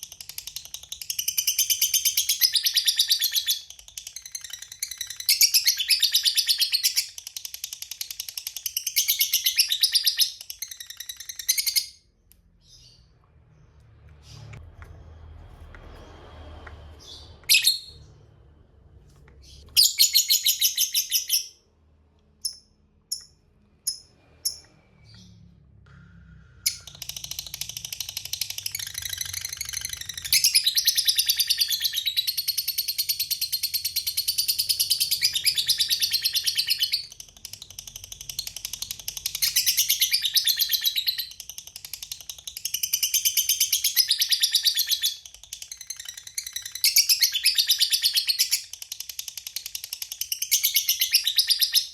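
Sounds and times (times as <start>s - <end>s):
bird chirping and trilling: 0.0s - 14.6s, 17.0s - 18.2s, 19.4s - 25.6s, 26.6s - 51.9s.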